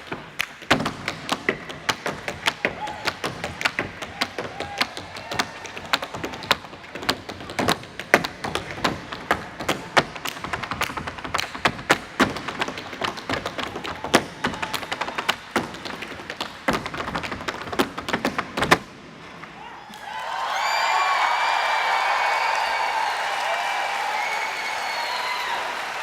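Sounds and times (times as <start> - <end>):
rapid percussive taps and thumps: 0.0 - 19.0.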